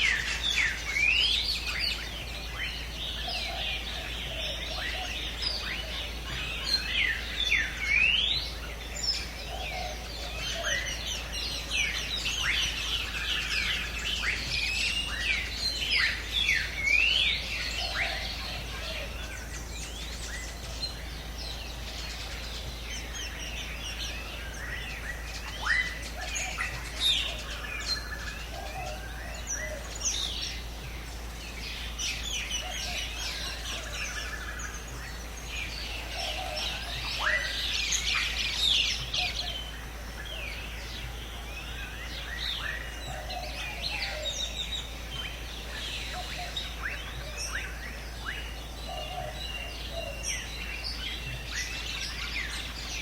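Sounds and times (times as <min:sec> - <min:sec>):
birds chirping and whistling: 0:00.0 - 0:53.0.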